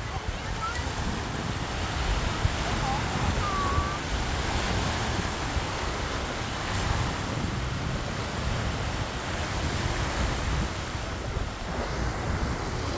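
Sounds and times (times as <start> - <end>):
sea waves washing ashore: 0.0 - 12.9
wind buffeting microphone: 0.0 - 12.9.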